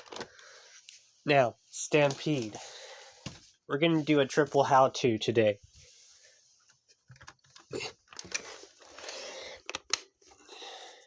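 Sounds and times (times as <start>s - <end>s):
plastic clicks and knocks: 9.6s - 10.1s.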